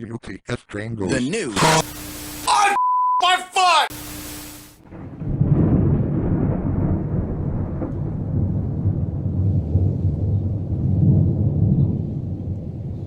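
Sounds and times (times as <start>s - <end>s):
static hiss: 1.6s - 2.8s, 3.6s - 4.8s
rolling thunder rumble: 4.8s - 13.0s.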